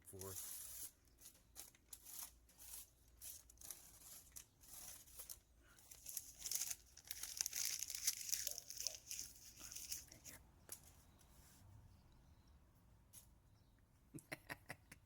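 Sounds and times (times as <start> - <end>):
paper rustling and crinkling: 0.0 - 11.6.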